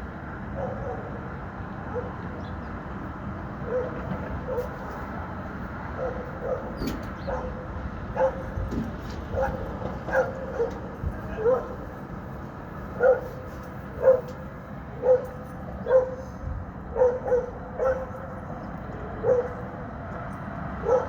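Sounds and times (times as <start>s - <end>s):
city traffic rumble: 0.0s - 21.0s
dog barking: 0.6s - 1.2s, 1.9s - 2.2s, 3.6s - 4.8s, 6.0s - 7.6s, 8.2s - 8.6s, 9.3s - 11.8s, 13.0s - 13.4s, 14.0s - 14.4s, 15.0s - 16.3s, 16.9s - 18.2s, 19.2s - 19.6s, 20.8s - 21.0s.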